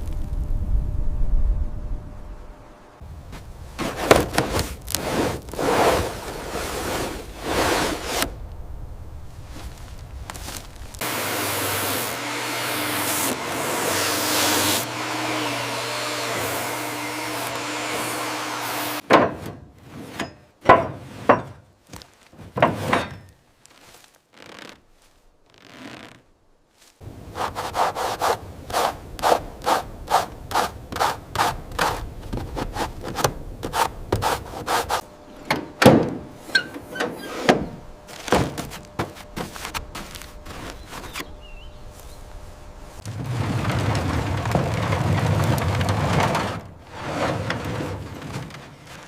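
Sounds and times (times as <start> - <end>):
hand tool rubbing strokes: 3.8 - 8.3, 10.4 - 19.0, 26.8 - 35.1, 36.3 - 41.4.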